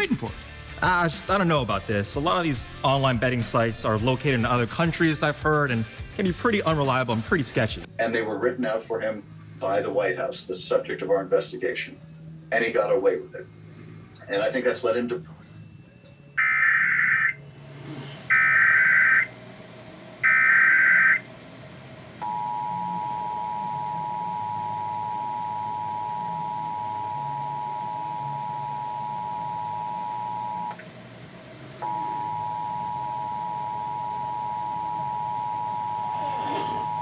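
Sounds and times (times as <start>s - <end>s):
buzzy digital data tones: 20.2s - 21.2s
steady two-tone attention signal: 20.2s - 21.3s, 22.2s - 30.8s, 31.8s - 37.0s.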